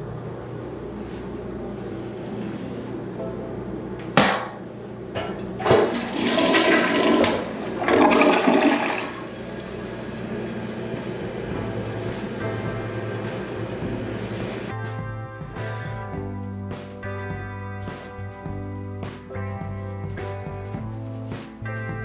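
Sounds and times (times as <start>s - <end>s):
toilet flush knock: 5.6s - 9.2s
toilet water rushing: 5.6s - 11.5s.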